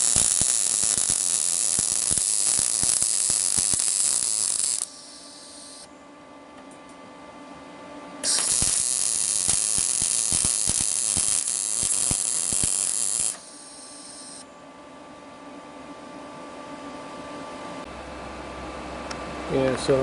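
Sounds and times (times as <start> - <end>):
welding arc hissing and crackling: 0.0 - 5.9, 8.2 - 14.4
steady hum: 0.0 - 20.0.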